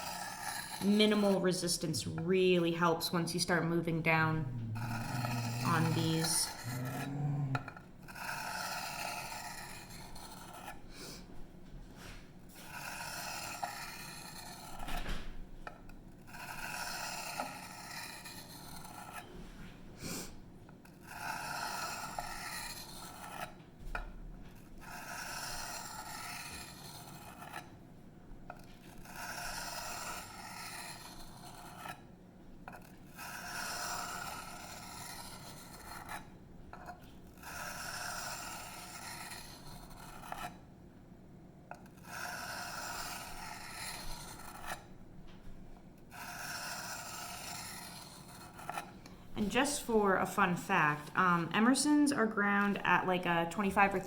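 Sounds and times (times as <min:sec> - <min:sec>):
knife scraping on whetstone: 0:00.0 - 0:01.4, 0:04.7 - 0:10.8, 0:12.5 - 0:14.9, 0:16.2 - 0:19.3, 0:20.8 - 0:23.6, 0:24.5 - 0:27.7, 0:28.5 - 0:32.1, 0:32.7 - 0:40.6, 0:41.7 - 0:44.9, 0:46.1 - 0:49.0.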